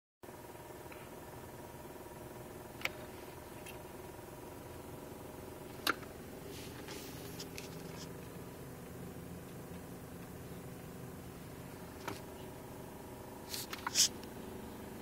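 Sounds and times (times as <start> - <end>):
steady running hum: 0.2 - 15.0
sharp ticks inside car cabin: 2.7 - 4.0, 7.4 - 11.1.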